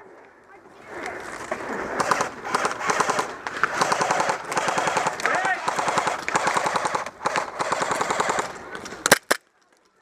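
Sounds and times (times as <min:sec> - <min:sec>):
airsoft guns firing bursts: 0:02.0 - 0:09.3.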